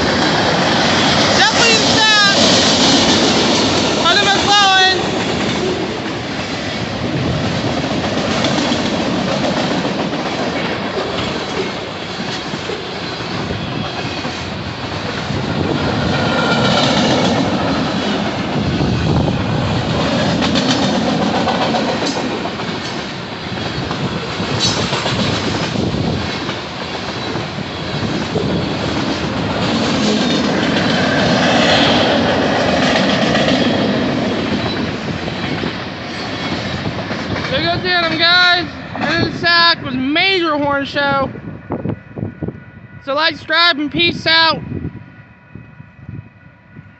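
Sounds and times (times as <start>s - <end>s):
freight train cars rolling: 0.0s - 45.4s
train wheel squeal: 10.5s - 14.8s, 23.4s - 24.9s, 26.9s - 29.1s, 33.5s - 37.4s
wheels clacking over rail joints: 19.5s - 39.4s.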